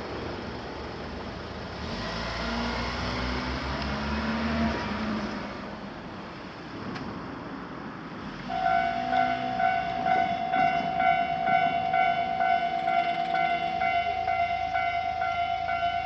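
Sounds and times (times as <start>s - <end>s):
passing road vehicle: 0.0s - 16.0s
railroad crossing alarm ringing: 8.5s - 16.0s.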